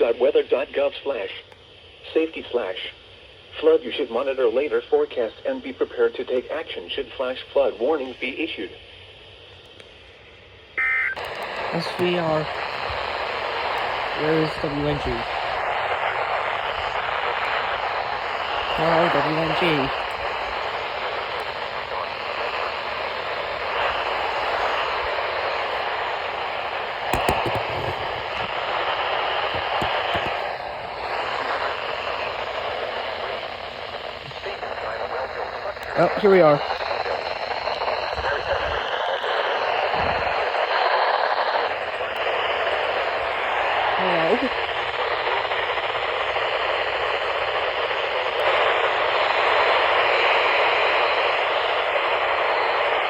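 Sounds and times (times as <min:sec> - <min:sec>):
radio static hiss: 0:00.0 - 0:53.0
sharp crackles: 0:11.2 - 0:53.0.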